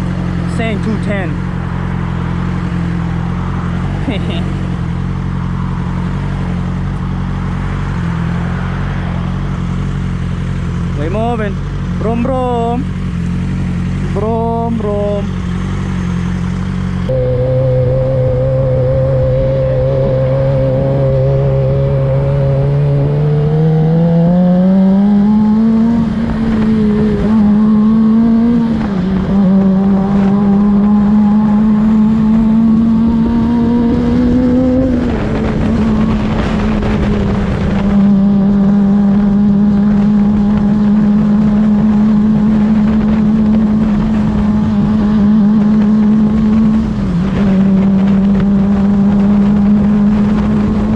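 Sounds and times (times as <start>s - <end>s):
motorcycle engine accelerating: 0.0s - 50.9s
wind rush: 17.0s - 50.9s.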